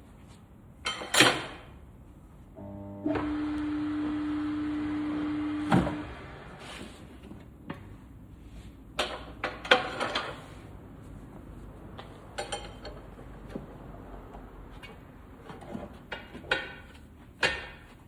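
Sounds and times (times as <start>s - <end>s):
machine hum with hiss: 2.6s - 7.0s
sharp knocks and clanks: 15.5s - 18.0s.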